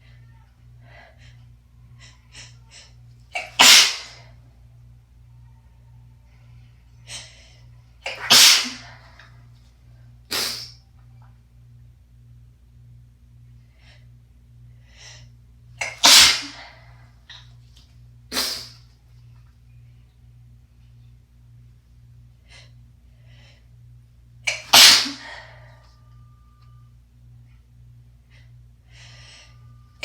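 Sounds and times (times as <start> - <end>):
quiet breaths: 0.0 - 3.2, 5.2 - 8.0, 19.2 - 24.2, 25.4 - 30.0
person sneezing: 3.4 - 4.2, 8.0 - 9.1, 10.3 - 10.8, 15.8 - 16.8, 18.3 - 18.8, 24.5 - 25.6.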